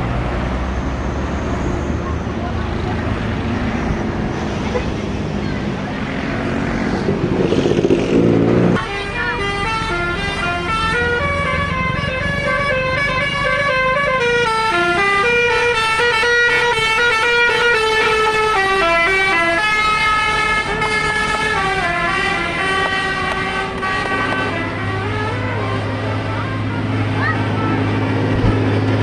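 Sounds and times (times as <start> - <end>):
low engine hum: 0.0 - 15.4, 17.8 - 29.0
bus horn playing a tune: 8.2 - 28.9.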